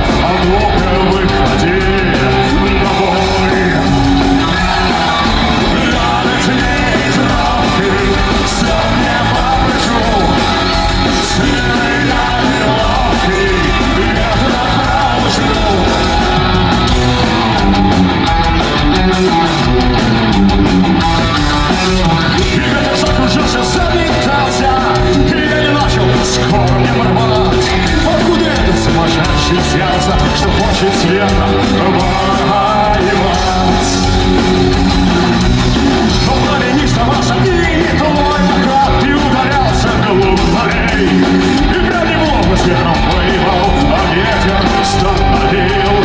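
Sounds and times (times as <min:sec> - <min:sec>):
distorted electric guitars: 0:00.0 - 0:46.0
drums: 0:00.0 - 0:46.0
live rock band playing: 0:00.0 - 0:46.0.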